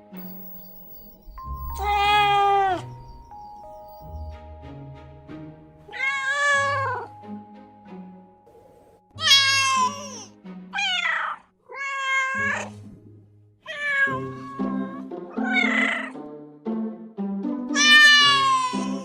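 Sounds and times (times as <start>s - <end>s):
background music with low notes: 0.0s - 11.6s, 12.3s - 19.0s
cat meowing: 1.4s - 3.1s, 5.9s - 7.1s, 9.2s - 12.7s, 13.7s - 16.2s, 17.8s - 19.0s.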